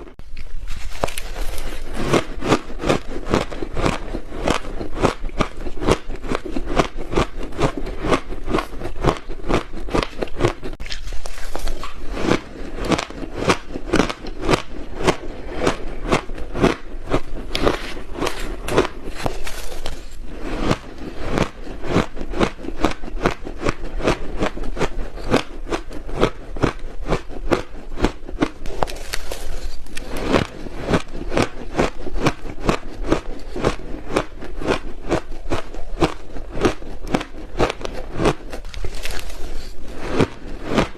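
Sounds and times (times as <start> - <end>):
ice crunching in mouth: 0.0 - 40.9.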